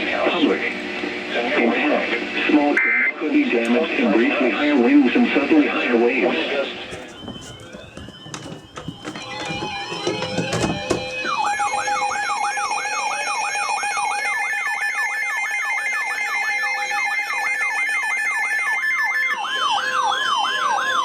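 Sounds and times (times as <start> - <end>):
siren-like sweeping alarm tone: 6.9 - 21.0.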